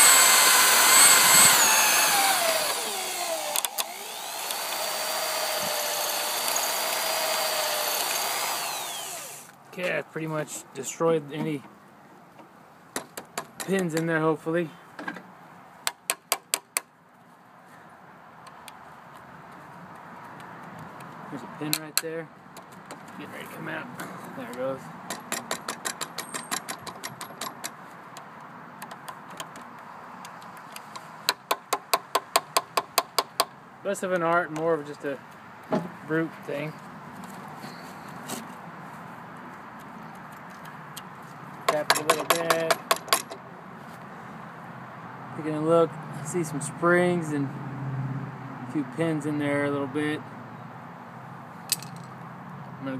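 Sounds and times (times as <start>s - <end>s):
power drill whining: 0.0s - 9.5s
sharp clicks: 3.5s - 4.8s.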